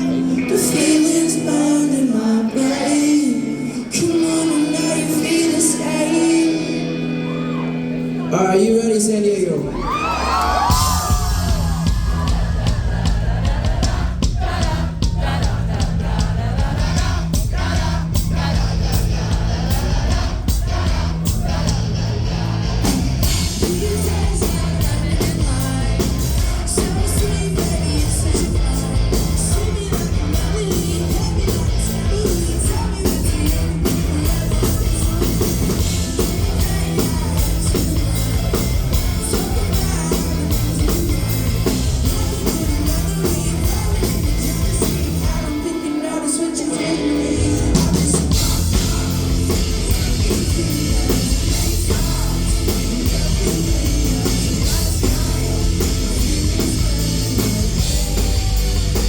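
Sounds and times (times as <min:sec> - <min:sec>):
person singing: 0:00.0 - 0:07.8, 0:23.2 - 0:59.0
live rock band playing: 0:00.0 - 0:59.0.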